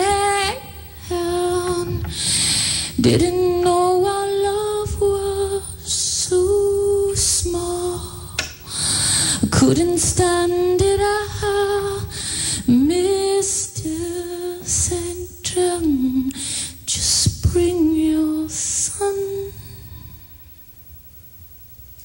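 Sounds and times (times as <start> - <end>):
woman singing a cappella: 0.0 - 20.2.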